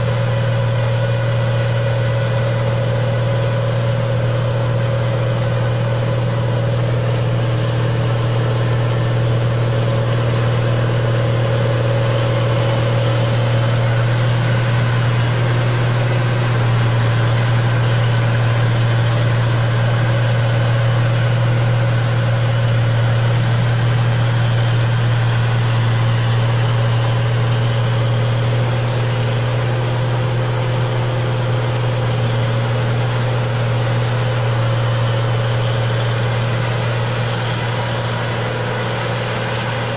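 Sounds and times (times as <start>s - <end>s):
machine engine humming: 0.0s - 39.9s.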